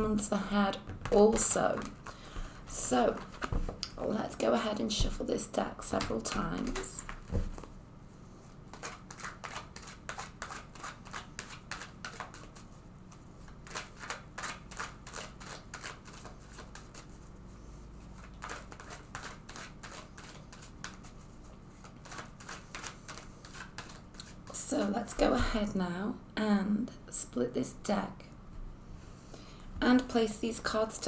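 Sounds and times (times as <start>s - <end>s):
cards being shuffled: 5.9s - 7.7s, 8.7s - 12.7s, 13.4s - 17.2s, 18.1s - 24.5s.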